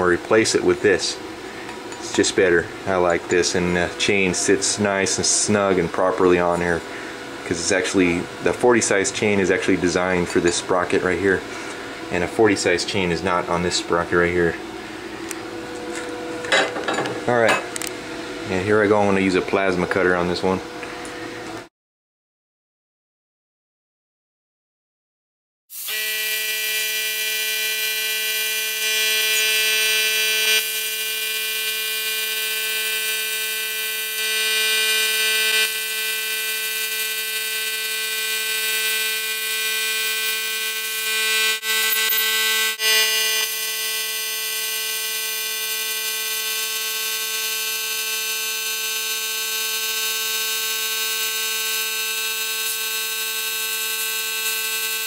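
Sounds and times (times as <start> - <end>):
plasma cutter buzzing whine: 2.0 - 6.8, 7.4 - 11.3, 25.7 - 55.0.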